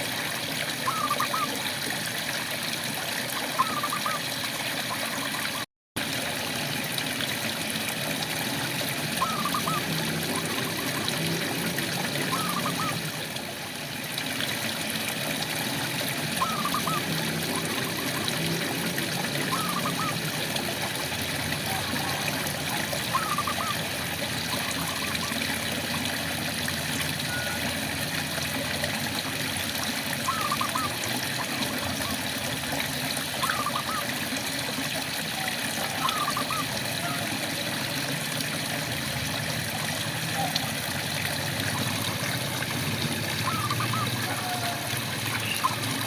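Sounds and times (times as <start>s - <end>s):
frog calling: 0.8s - 1.6s, 3.4s - 4.2s, 9.2s - 11.2s, 12.1s - 13.0s, 16.4s - 18.3s, 19.3s - 20.2s, 23.0s - 23.8s, 30.2s - 31.6s, 33.4s - 34.1s, 36.0s - 37.3s, 43.4s - 46.0s.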